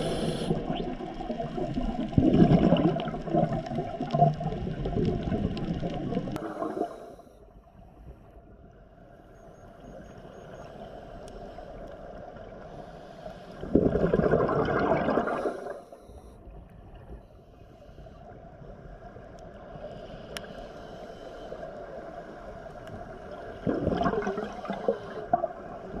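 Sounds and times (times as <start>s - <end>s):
regulator hiss: 0.0s - 0.8s
diver's bubbles gurgling: 0.0s - 6.9s, 13.6s - 15.8s, 23.3s - 26.0s.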